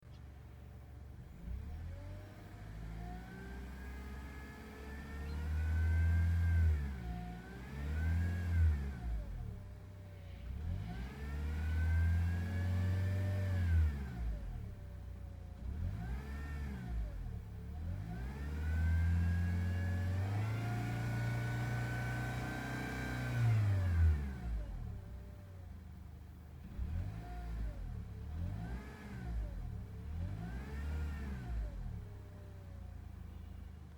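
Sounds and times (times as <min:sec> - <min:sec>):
car engine revving: 0:10.4 - 0:14.7, 0:15.6 - 0:25.1, 0:26.6 - 0:32.3.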